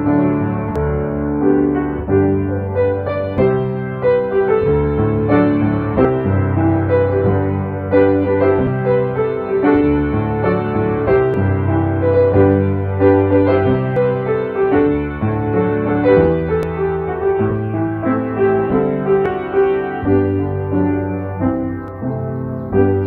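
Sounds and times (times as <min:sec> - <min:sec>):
slow gentle piano piece: 0:00.0 - 0:23.0.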